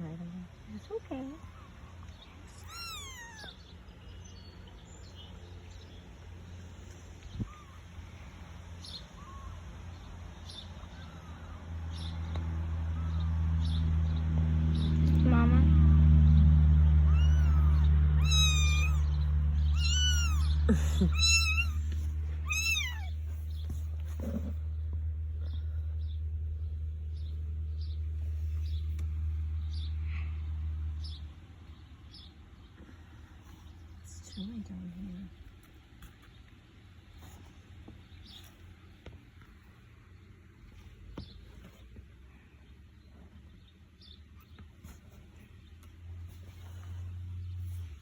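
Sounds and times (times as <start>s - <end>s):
low steady hum: 0.0s - 48.0s
kittens squeaking: 1.4s - 3.9s, 7.2s - 8.0s, 8.8s - 10.0s, 17.0s - 24.6s.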